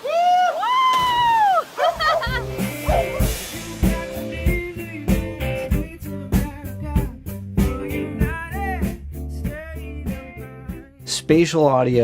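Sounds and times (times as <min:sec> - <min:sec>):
background music with drums: 0:02.2 - 0:11.4.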